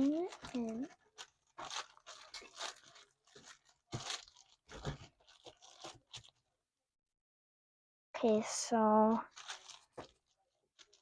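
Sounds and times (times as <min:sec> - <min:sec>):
plastic bag rustling: 0:00.0 - 0:06.4, 0:09.0 - 0:11.0.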